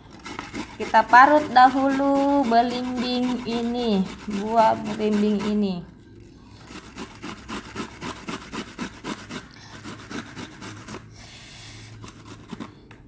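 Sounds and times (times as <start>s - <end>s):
fruit rasping on hand grater: 0.0s - 5.8s, 6.6s - 11.1s, 12.0s - 12.8s.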